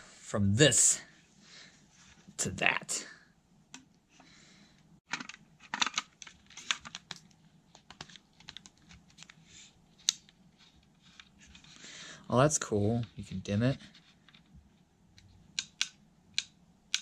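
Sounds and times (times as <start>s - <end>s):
plastic parts clicking: 5.1s - 9.4s, 15.5s - 17.0s.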